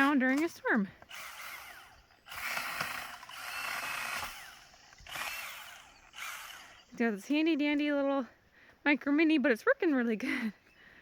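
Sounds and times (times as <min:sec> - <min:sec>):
mini chainsaw cutting wood: 0:00.0 - 0:07.0.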